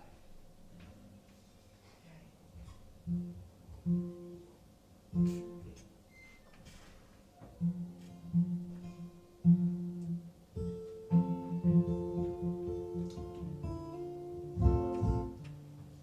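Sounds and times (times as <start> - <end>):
acoustic guitar playing: 3.0 - 6.0, 7.6 - 16.0.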